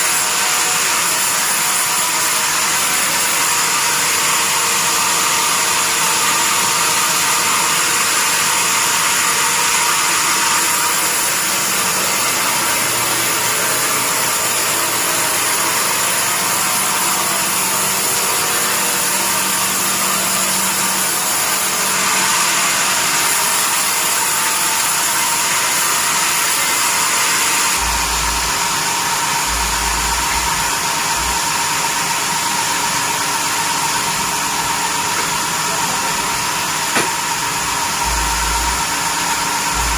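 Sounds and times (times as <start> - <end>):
bandsaw whining: 0.0 - 39.9.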